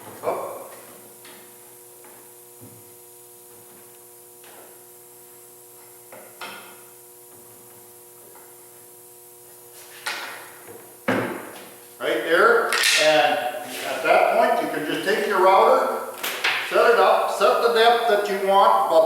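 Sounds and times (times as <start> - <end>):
electrical hum: 0.0 - 19.0
tools knocking on workbench: 10.7 - 11.6.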